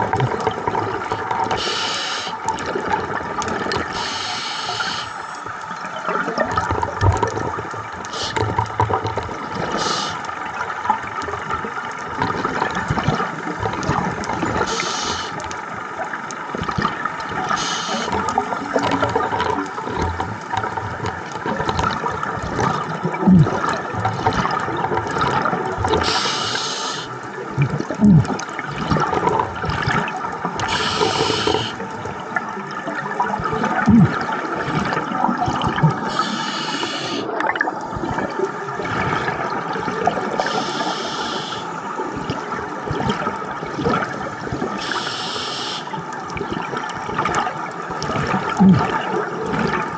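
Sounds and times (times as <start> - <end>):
gurgling regulator bubbles: 0.0 - 49.9
regulator hiss: 1.6 - 2.4, 4.0 - 5.4, 8.1 - 8.5, 9.7 - 10.2, 14.7 - 15.4, 17.5 - 18.2, 26.0 - 27.1, 30.6 - 31.8, 36.1 - 37.3, 40.4 - 41.8, 44.8 - 45.9.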